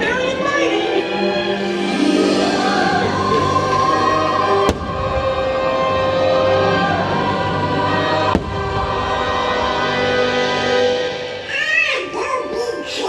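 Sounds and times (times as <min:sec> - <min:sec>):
fireworks exploding: 0:04.5 - 0:11.2
sharp crack: 0:04.7 - 0:05.4, 0:08.4 - 0:09.2.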